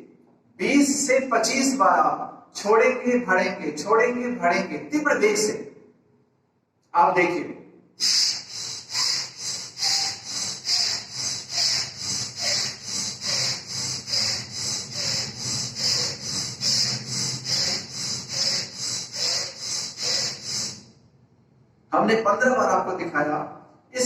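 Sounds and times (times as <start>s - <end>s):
forceful nostril breathing: 8.0s - 21.1s.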